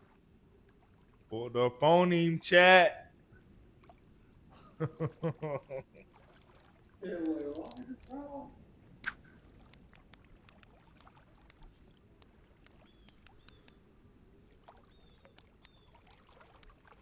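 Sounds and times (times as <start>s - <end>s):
small sharp clicks: 9.0s - 13.8s.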